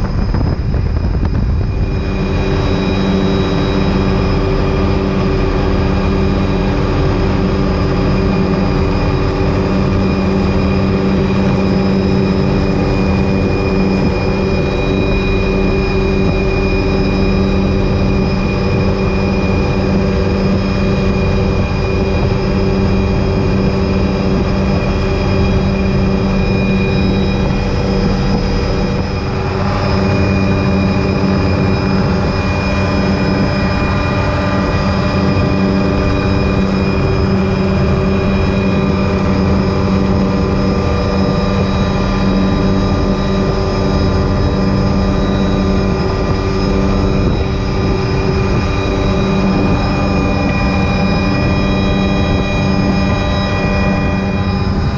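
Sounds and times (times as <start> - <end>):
wind rushing: 0.0 - 5.6
helicopter rotor and engine drone: 0.0 - 54.9.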